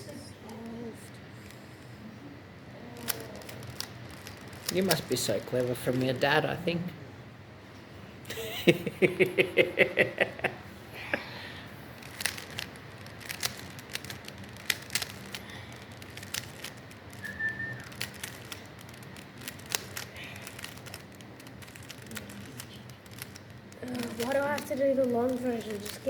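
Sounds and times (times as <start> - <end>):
plastic puzzle cube clicking: 3.0 - 6.3, 12.0 - 26.0
faint whistle-like tone: 17.2 - 18.0.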